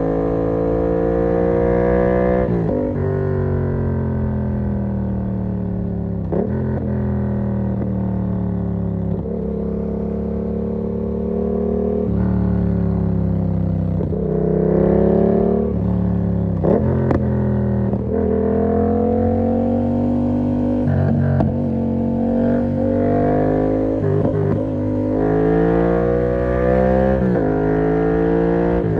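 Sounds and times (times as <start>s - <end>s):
motorcycle engine accelerating: 0.0s - 28.9s.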